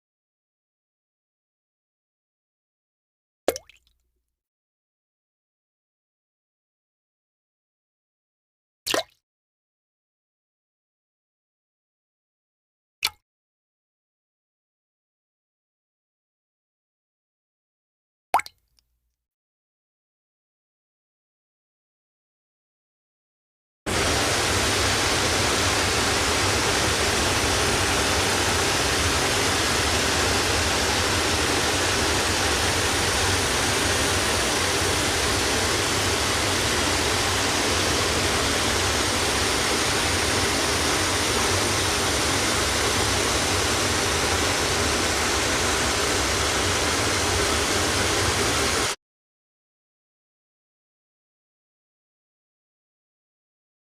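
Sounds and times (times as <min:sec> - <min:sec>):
waterfall rushing: 0:23.9 - 0:49.0.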